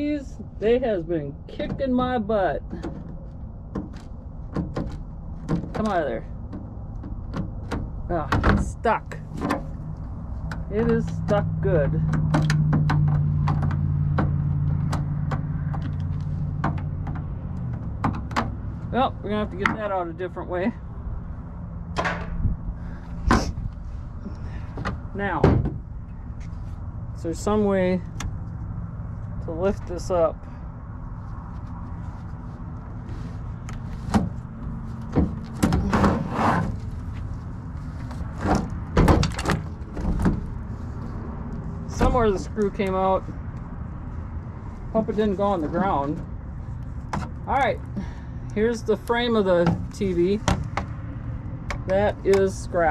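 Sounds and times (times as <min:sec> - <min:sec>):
steady low rumble: 0:00.0 - 0:52.9
casing parts knocking and scraping: 0:01.5 - 0:20.1, 0:31.2 - 0:52.9.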